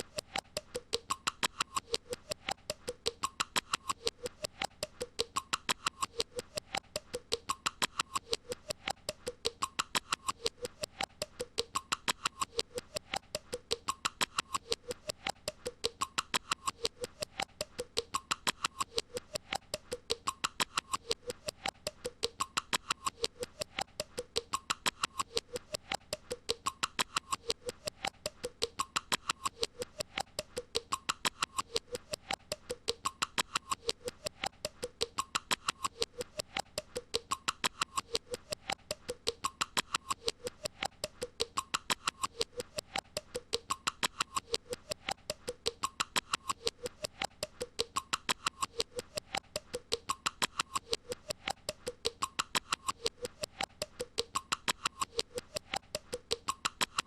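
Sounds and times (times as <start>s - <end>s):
fast even clicking: 0.0s - 57.0s.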